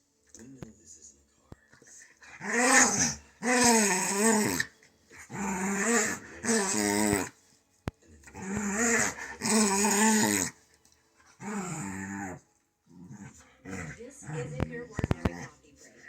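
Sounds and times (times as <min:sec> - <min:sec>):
dog moaning calls: 0:08.4 - 0:10.5.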